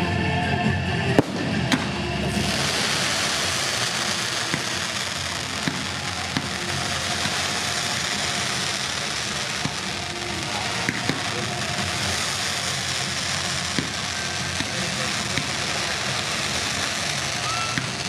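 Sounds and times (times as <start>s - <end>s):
firework bang: 1.2s - 18.0s
hiss of bursting fireworks: 1.2s - 18.0s
sharp firework pops: 1.2s - 18.0s.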